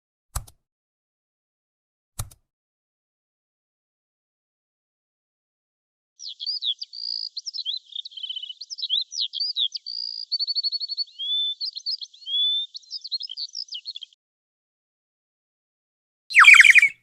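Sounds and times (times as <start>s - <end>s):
songbird singing: 6.2s - 14.2s, 16.3s - 17.0s.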